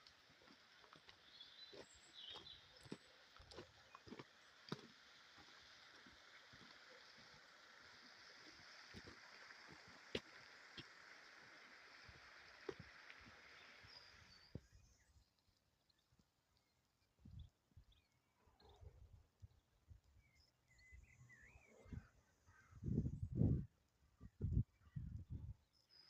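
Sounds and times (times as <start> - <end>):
faint steady hiss: 0.0 - 15.7.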